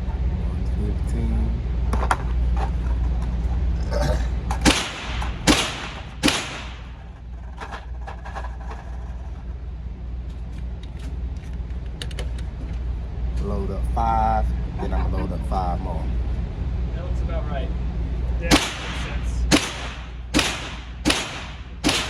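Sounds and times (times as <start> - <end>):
steady low hum: 0.0 - 22.0
gunshots with echo: 4.6 - 7.0, 18.5 - 22.0.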